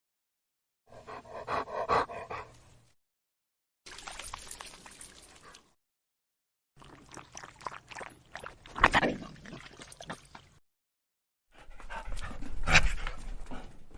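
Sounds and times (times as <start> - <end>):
dog breathing fast: 0.9 - 2.6, 11.5 - 13.9.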